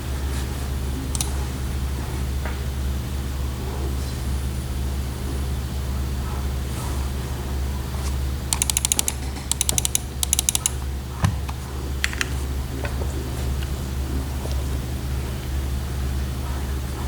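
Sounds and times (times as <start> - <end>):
keyboard keystrokes: 1.1 - 1.5, 8.5 - 12.5.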